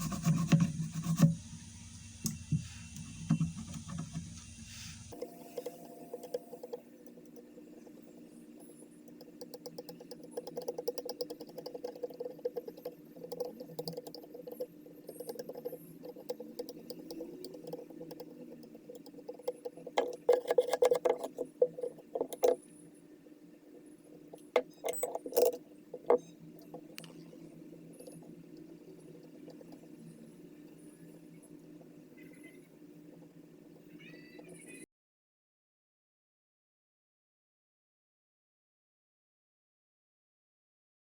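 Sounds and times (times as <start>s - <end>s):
fine rapid scratching: 0.0s - 1.5s, 6.4s - 23.1s
steady low hum: 0.0s - 10.4s.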